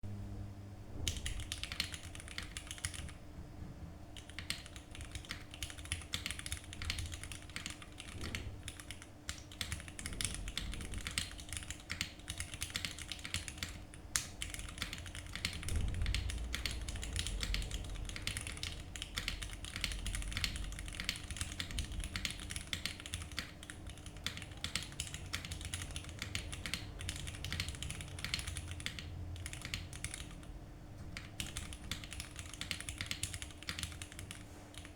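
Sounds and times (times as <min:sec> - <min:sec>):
fast mechanical keyboard typing: 0:01.0 - 0:03.2, 0:04.2 - 0:34.9.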